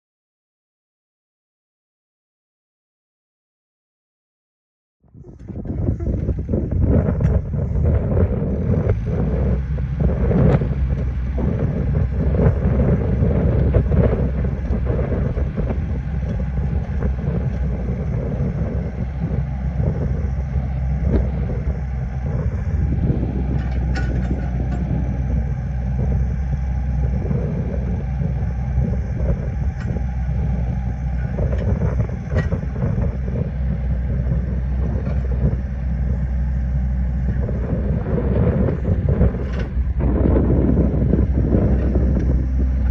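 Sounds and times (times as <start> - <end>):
excavator diesel engine running: 5.1 - 42.9.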